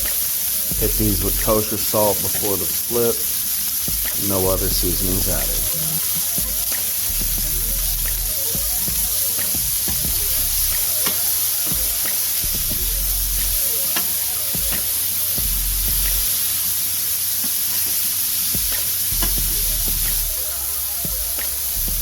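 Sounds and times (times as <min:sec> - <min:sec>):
patties sizzling on griddle: 0:00.0 - 0:22.0
fat popping and crackling: 0:18.7 - 0:20.5.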